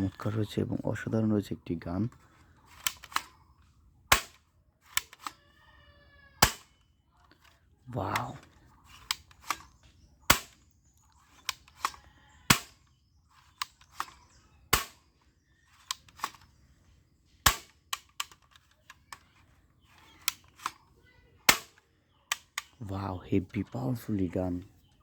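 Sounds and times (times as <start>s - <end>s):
airsoft gun snaps: 2.8s - 3.3s, 4.1s - 5.4s, 6.4s - 6.7s, 9.0s - 9.7s, 10.3s - 10.7s, 11.4s - 12.8s, 13.5s - 15.0s, 17.4s - 18.4s, 21.5s - 22.8s.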